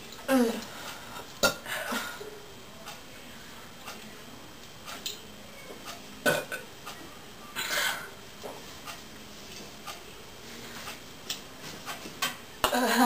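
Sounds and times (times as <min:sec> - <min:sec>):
woman burping: 0:00.3 - 0:00.6, 0:01.4 - 0:02.2, 0:06.2 - 0:06.7, 0:12.6 - 0:13.0.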